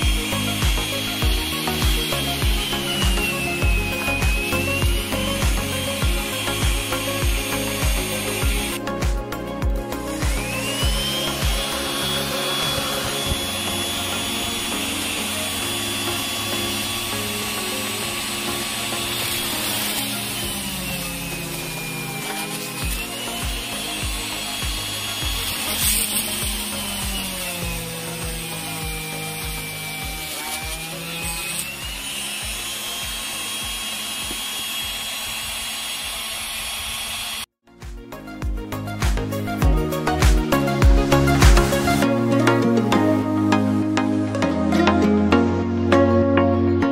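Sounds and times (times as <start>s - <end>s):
grinding rub: 0.0s - 37.4s
drill motor running with whine: 0.0s - 37.5s, 38.9s - 43.3s.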